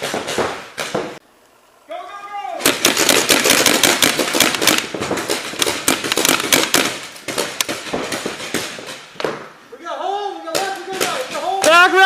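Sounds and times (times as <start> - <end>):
paintball marker shots: 2.6 - 9.5.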